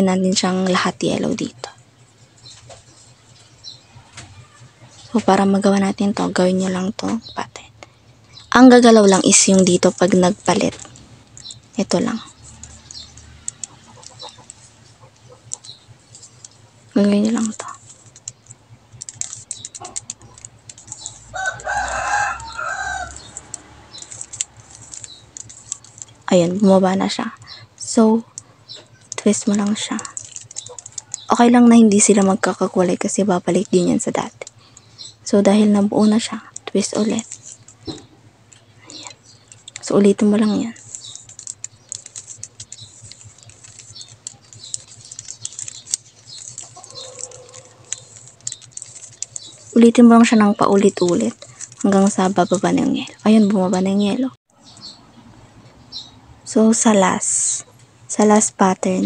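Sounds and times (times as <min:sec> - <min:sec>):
plastic puzzle cube clicking: 0:09.6 - 0:16.6, 0:17.2 - 0:21.7, 0:22.4 - 0:26.4, 0:29.1 - 0:32.5, 0:36.6 - 0:38.0, 0:38.9 - 0:49.8
rooster crowing: 0:21.3 - 0:23.8, 0:46.8 - 0:48.1.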